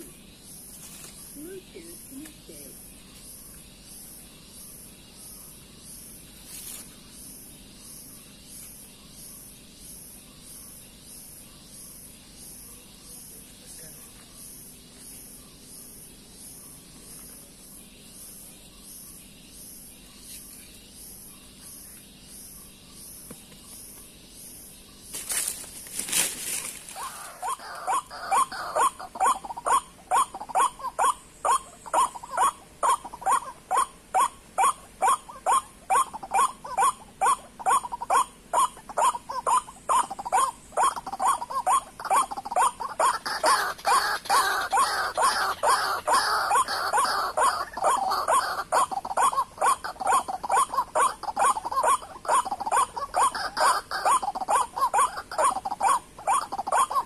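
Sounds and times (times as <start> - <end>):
faint pulsing insect-like hiss: 0.0 - 57.0
waterhen croaking calls: 26.8 - 57.0.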